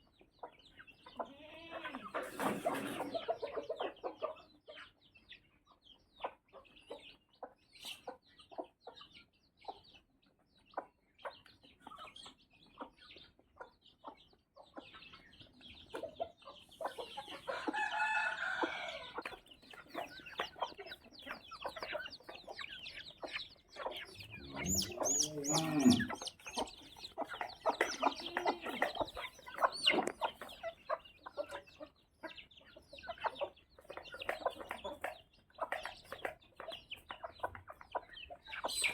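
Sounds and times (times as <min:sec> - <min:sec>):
chickens clucking: 0:00.0 - 0:38.9
rooster crowing: 0:17.5 - 0:19.1, 0:24.2 - 0:26.3.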